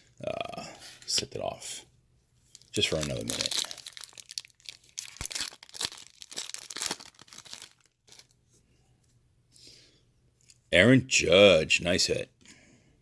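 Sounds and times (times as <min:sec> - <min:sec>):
foil wrapper tearing and crinkling: 0:02.5 - 0:08.3.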